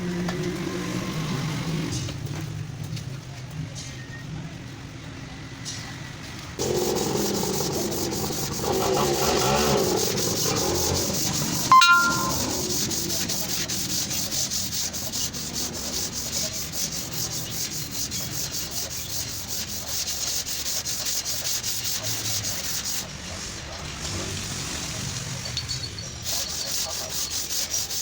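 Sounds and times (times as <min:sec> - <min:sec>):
sandpaper rubbing metal panel: 0:06.6 - 0:23.2, 0:26.2 - 0:28.0.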